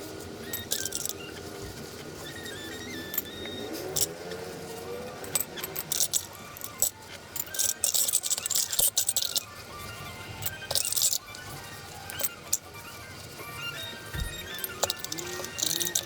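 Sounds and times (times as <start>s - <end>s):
soft background music: 0.0s - 16.0s
small hard objects clinking: 0.4s - 1.4s, 3.0s - 12.9s, 14.1s - 16.0s.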